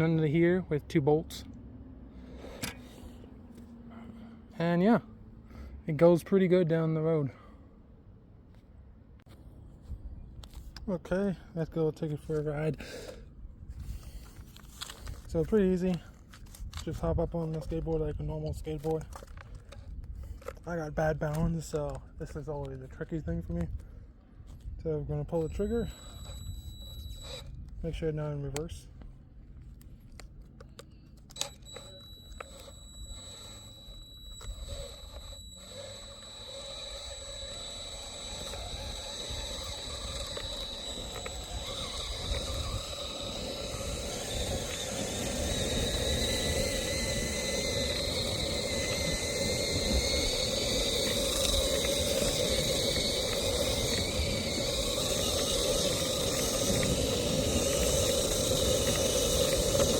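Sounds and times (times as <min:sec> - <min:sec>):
drill motor whining: 0:25.3 - 0:27.8, 0:31.3 - 0:59.9
drill clicks: 0:25.4 - 0:27.8, 0:29.8 - 0:59.9
wheels rolling: 0:31.3 - 0:59.9
wind noise: 0:38.5 - 0:59.9.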